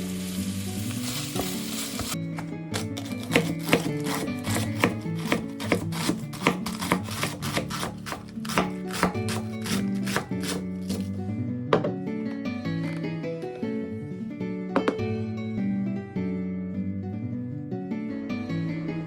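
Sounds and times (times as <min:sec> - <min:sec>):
background music: 0:00.0 - 0:19.0
knife chopping on cutting board: 0:02.0 - 0:11.1.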